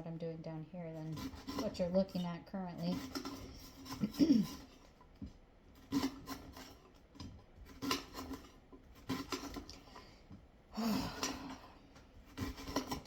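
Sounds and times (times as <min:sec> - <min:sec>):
knife scraping board: 0:00.9 - 0:05.0, 0:05.7 - 0:07.0, 0:07.6 - 0:10.1, 0:12.3 - 0:13.0
knife cutting vegetables on board: 0:01.0 - 0:09.8, 0:12.3 - 0:13.0.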